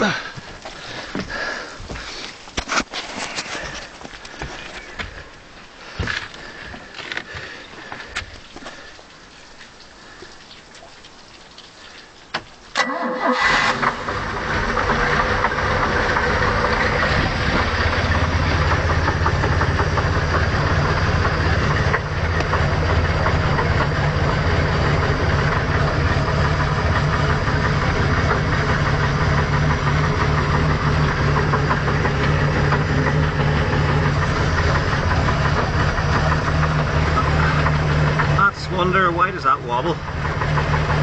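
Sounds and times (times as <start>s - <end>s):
boat engine idling with knock: 3.4s - 8.9s, 13.9s - 41.0s.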